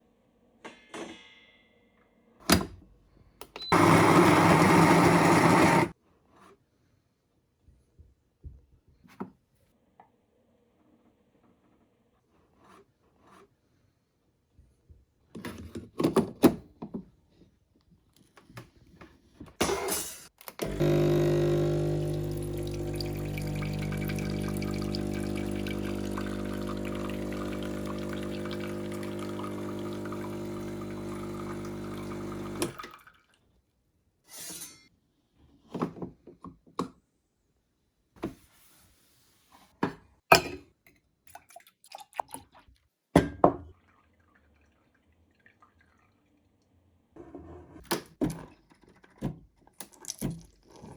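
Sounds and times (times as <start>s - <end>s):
coffee machine pump humming: 3.6s - 5.9s, 20.6s - 32.8s
liquid running into cup: 20.6s - 33.4s
dripping: 21.6s - 33.3s.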